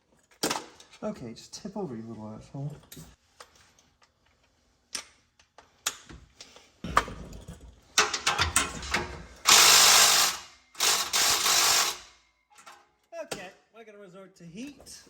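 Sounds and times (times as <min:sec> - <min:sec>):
ratchet wrench clicking: 0:09.4 - 0:12.1.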